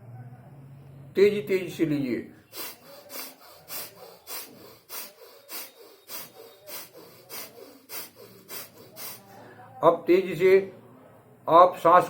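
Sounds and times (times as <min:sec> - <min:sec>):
forceful breaths through nose: 0:02.4 - 0:09.7.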